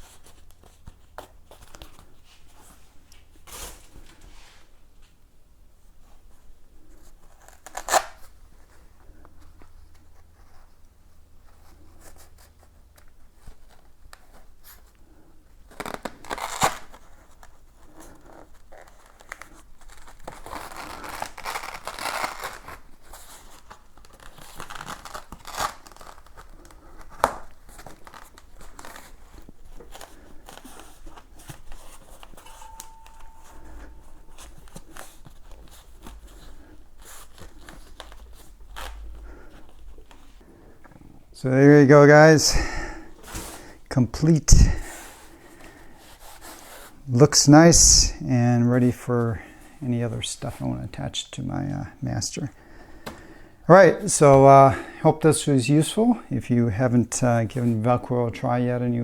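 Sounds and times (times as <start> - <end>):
velcro tearing: 7.2 - 8.3, 15.7 - 33.2.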